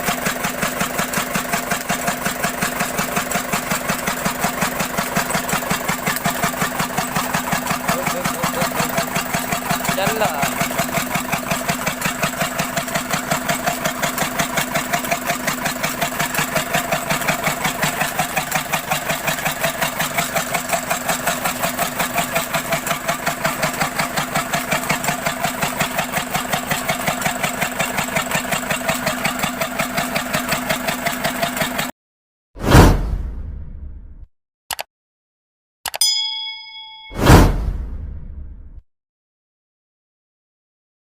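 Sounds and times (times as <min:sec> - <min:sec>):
diesel engine running: 0:00.0 - 0:31.9.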